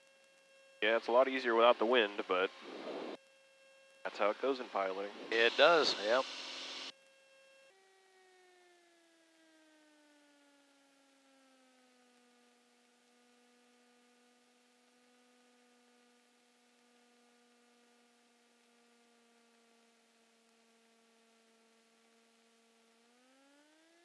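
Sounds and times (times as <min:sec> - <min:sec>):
light aircraft engine drone: 0:00.8 - 0:03.2, 0:04.1 - 0:06.9, 0:09.6 - 0:23.4.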